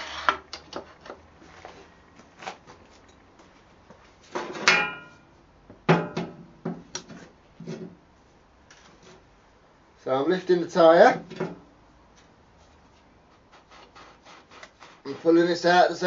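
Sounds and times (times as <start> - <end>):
ringing metal clank: 4.6 - 5.2.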